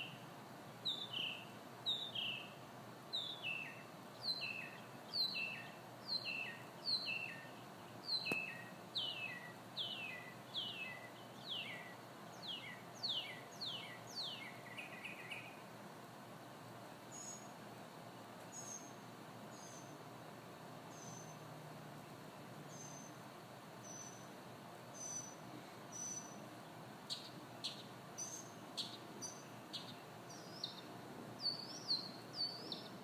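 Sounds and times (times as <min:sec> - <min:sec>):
songbird singing whistled notes: 0:00.0 - 0:00.2, 0:00.8 - 0:15.6, 0:17.1 - 0:17.5, 0:18.5 - 0:20.0, 0:20.9 - 0:21.5, 0:22.7 - 0:23.2, 0:23.8 - 0:26.4, 0:27.1 - 0:33.0
steady hiss: 0:00.0 - 0:33.0.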